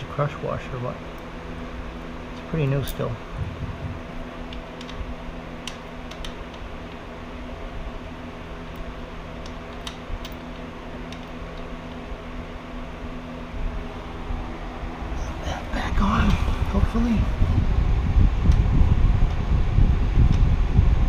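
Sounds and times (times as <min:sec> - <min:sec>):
fan-like hum: 0:00.0 - 0:21.0.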